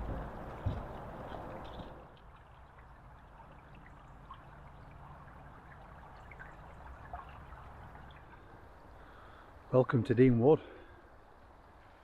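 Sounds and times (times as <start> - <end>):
stream water trickling: 0.0 - 12.0.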